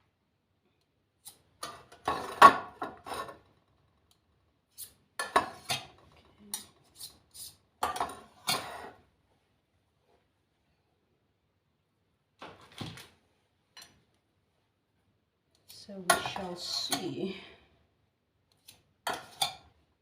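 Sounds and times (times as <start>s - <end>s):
utensils clattering on cookware: 1.6s - 3.5s, 5.2s - 7.1s, 7.8s - 9.0s.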